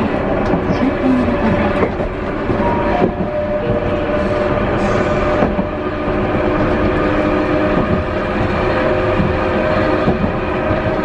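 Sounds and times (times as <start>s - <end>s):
tram running noise: 0.0s - 11.0s
tram whine: 0.0s - 11.0s
wheels knocking on rails: 0.0s - 11.0s.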